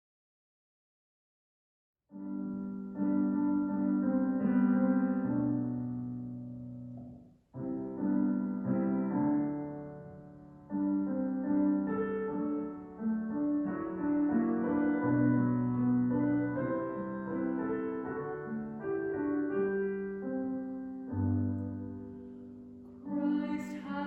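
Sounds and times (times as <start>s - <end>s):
keyboard playing hymn chords: 2.2s - 23.6s.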